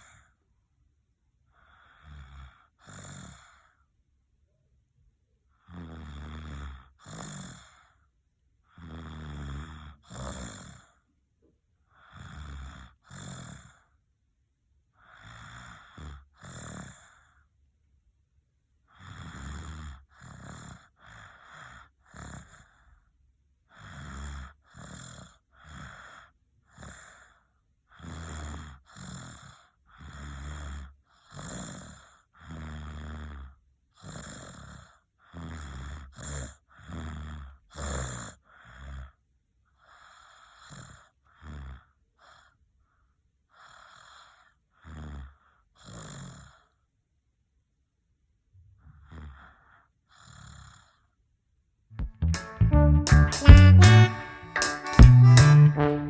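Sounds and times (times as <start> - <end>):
baby snoring and snuffling: 1.6 - 3.8, 5.6 - 8.0, 8.7 - 11.0, 11.9 - 14.0, 15.0 - 17.4, 18.9 - 22.9, 23.7 - 27.4, 28.0 - 39.2, 39.8 - 42.6, 43.5 - 46.8, 48.9 - 51.2.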